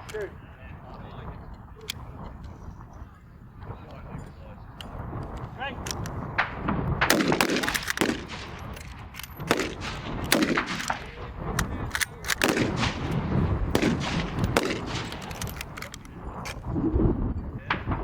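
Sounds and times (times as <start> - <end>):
rifle shots: 5.9 - 16.6.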